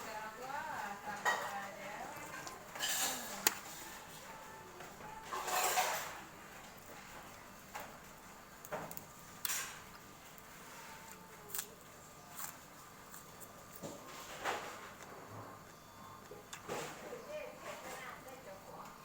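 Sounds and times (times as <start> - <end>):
spoon and chopsticks clinking bowl: 5.3 - 6.2.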